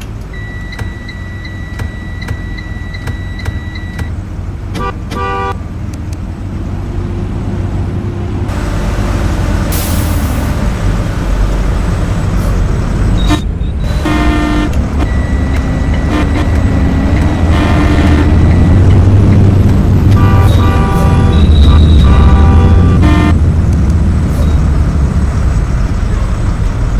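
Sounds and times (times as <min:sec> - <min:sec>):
bus engine running: 0:00.0 - 0:26.9
short horn blasts: 0:04.8 - 0:05.6, 0:13.2 - 0:18.8, 0:20.0 - 0:23.4
air brake hiss: 0:08.5 - 0:12.6.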